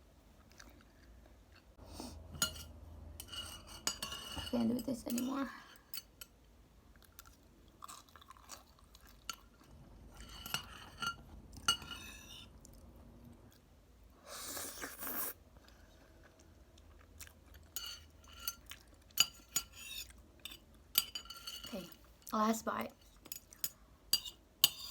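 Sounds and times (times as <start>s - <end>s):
close-up chewing noodles: 0.3s - 1.8s, 6.9s - 9.8s, 14.4s - 19.2s.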